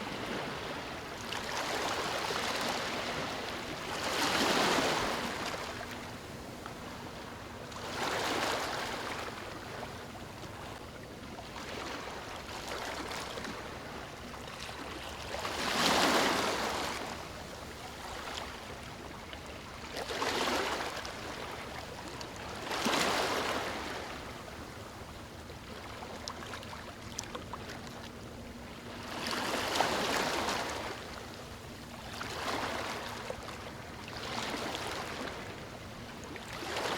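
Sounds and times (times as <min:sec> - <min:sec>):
ocean waves breaking on beach: 0:00.0 - 0:06.2, 0:06.9 - 0:10.6, 0:15.3 - 0:18.8.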